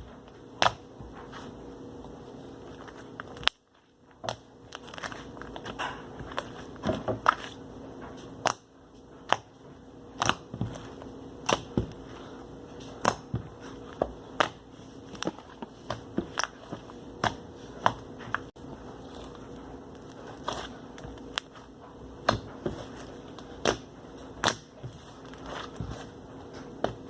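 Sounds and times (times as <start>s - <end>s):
slime kneaded by hand: 0.0s - 27.0s.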